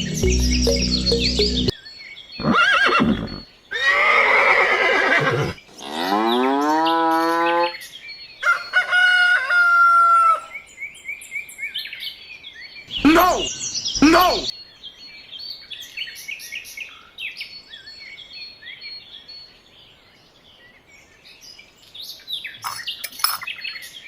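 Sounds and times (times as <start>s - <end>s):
background music: 0.0s - 1.7s
bird chirps: 0.0s - 3.4s, 11.0s - 14.6s
farm animal calls: 2.4s - 7.7s, 12.9s - 14.5s.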